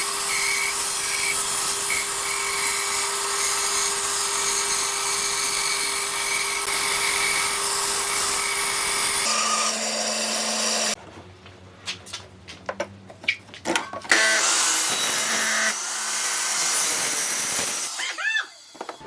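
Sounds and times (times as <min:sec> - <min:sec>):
power tool cutting wood: 0:00.0 - 0:11.0, 0:14.1 - 0:19.0.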